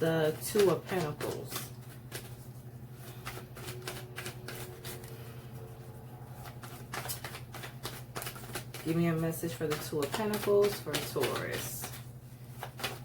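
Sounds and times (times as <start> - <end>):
cards being shuffled by hand: 0.0 - 13.0
steady low hum: 0.0 - 13.0.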